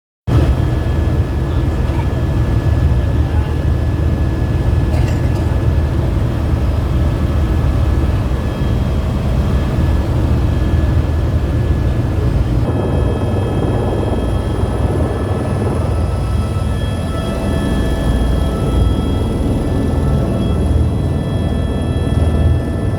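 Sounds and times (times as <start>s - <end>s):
helicopter rotor and turbine drone: 0.3s - 22.9s
high whine tones: 6.4s - 22.9s.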